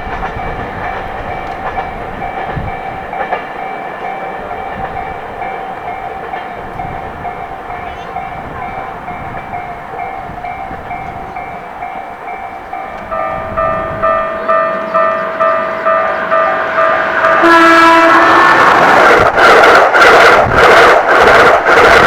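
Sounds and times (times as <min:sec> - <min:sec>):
level crossing alarm clanging: 0:00.0 - 0:18.0
train passing: 0:00.0 - 0:22.0
train horn blast: 0:13.0 - 0:18.9.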